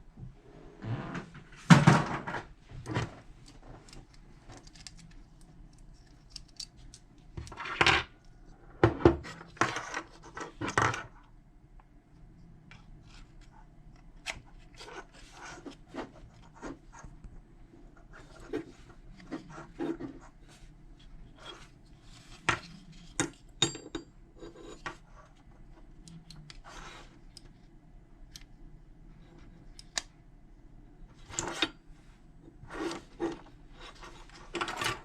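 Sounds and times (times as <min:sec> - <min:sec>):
metal lock parts clicking: 0:04.0 - 0:07.0.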